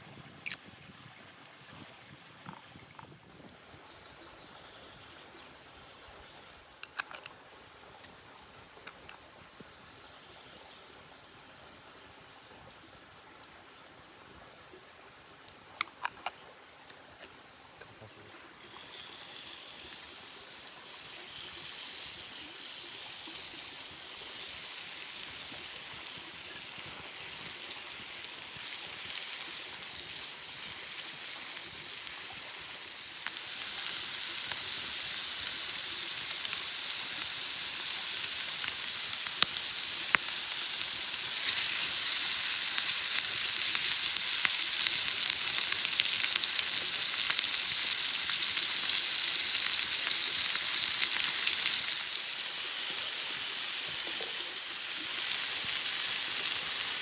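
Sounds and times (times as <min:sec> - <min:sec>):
food sizzling in a pan: 0:18.5 - 0:57.0.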